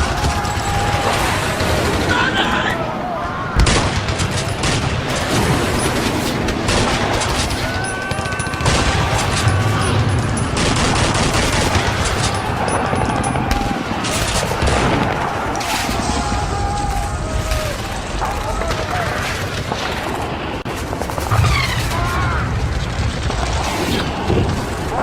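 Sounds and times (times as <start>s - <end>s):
rifle and machine-gun fire: 0.0s - 2.5s, 3.6s - 25.0s
men shouting: 0.0s - 3.6s, 7.5s - 19.4s
deep explosions: 0.0s - 25.0s.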